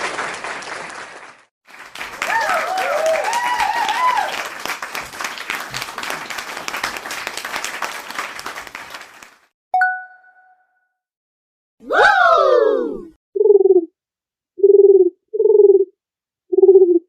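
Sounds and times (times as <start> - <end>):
crowd applauding: 0.0 - 9.5
cheering whoops: 2.2 - 4.6, 11.9 - 13.1.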